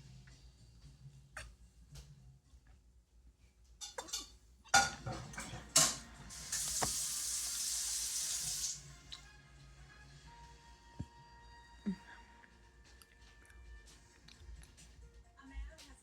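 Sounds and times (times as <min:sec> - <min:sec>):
water tap running: 0:05.2 - 0:09.1.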